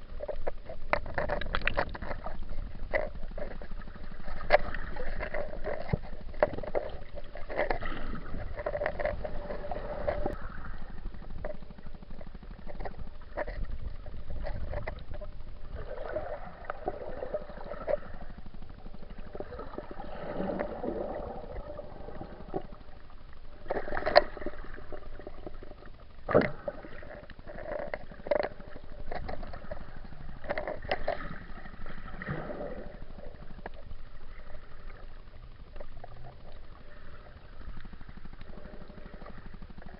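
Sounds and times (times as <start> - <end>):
muffled water sloshing: 0.0 - 39.9
sharp clicks and knocks: 0.2 - 10.4.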